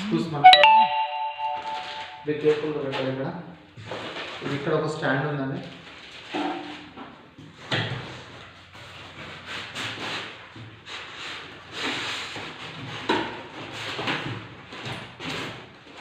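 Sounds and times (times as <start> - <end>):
rubbing and scraping packaging: 3.9 - 4.6, 5.7 - 16.0.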